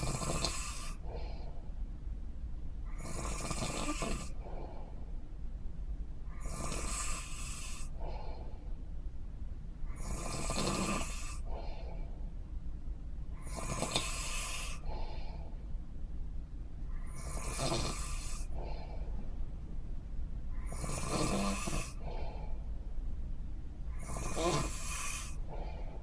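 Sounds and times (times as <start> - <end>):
person snoring: 0.0 - 1.0, 3.0 - 4.4, 6.4 - 7.9, 9.9 - 11.4, 13.4 - 15.0, 17.1 - 18.9, 20.6 - 22.4, 24.0 - 26.0
faint breath: 0.0 - 2.1, 3.8 - 5.4, 6.2 - 26.0
steady low hum: 0.0 - 26.0.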